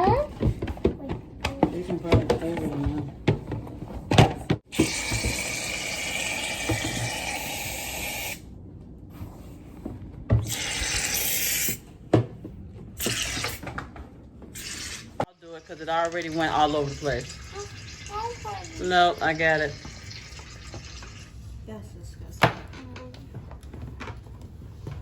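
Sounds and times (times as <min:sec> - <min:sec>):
water running from a tap: 0:04.8 - 0:08.4, 0:10.4 - 0:11.7, 0:14.6 - 0:21.4.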